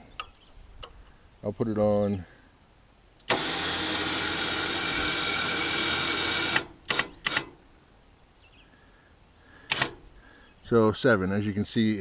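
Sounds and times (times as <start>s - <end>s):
sawmill drive running: 3.3s - 7.4s.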